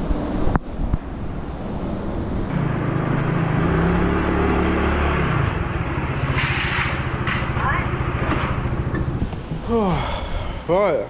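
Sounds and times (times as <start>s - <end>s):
motorbike engine running: 2.5s - 9.4s.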